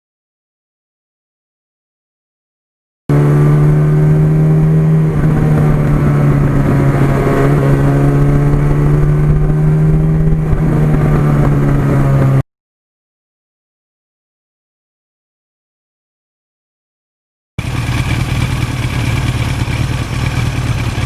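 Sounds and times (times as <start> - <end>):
motorcycle engine running: 3.1 - 12.4, 17.6 - 21.0.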